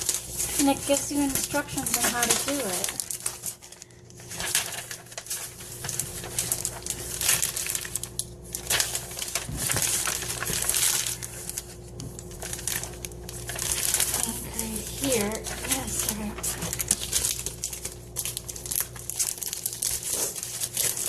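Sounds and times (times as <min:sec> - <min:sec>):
faint steady hum: 0:00.0 - 0:21.0
packaging rustling and crinkling: 0:00.0 - 0:21.0.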